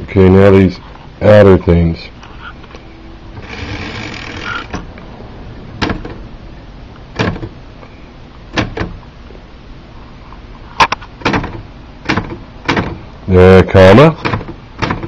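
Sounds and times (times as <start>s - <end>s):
rasping typewriter mechanism: 3.4s - 4.8s, 14.2s - 15.0s.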